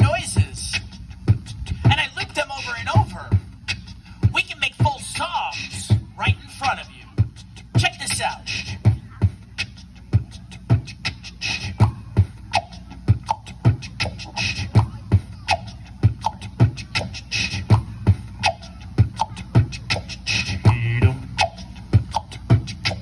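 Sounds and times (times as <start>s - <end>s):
beatboxed kick drums: 0.0s - 23.0s
beatboxed clicks: 7.4s - 23.0s.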